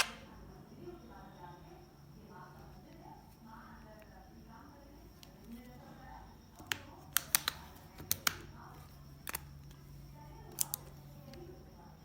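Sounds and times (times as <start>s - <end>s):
sharp clicks: 0.0s - 0.3s, 6.6s - 8.4s
faint low hum: 0.0s - 12.0s.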